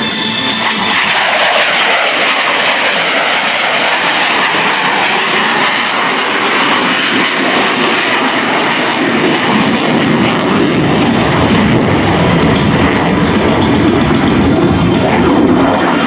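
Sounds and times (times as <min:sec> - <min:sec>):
jet passing with roaring rush: 0:00.0 - 0:16.0.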